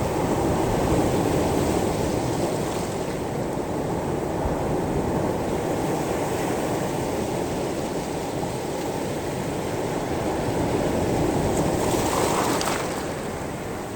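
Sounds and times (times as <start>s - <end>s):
waves washing over pebbles: 11.0s - 13.7s.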